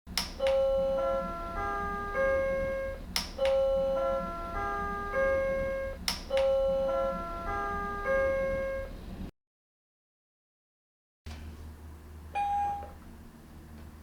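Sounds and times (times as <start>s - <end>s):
electronic chime melody: 0.5s - 8.9s.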